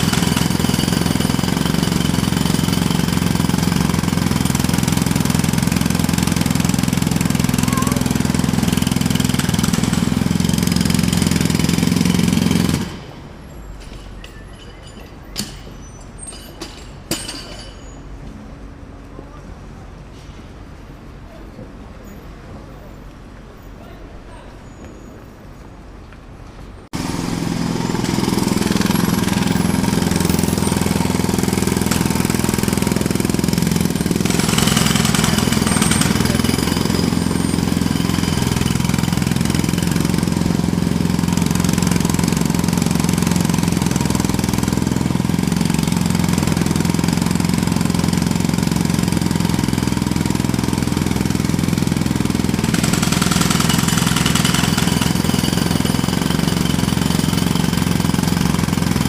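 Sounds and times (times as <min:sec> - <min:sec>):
jackhammer hammering: 0:00.0 - 0:13.3, 0:14.1 - 0:17.9, 0:26.9 - 0:59.0
engine running: 0:00.0 - 0:13.4, 0:26.9 - 0:59.0.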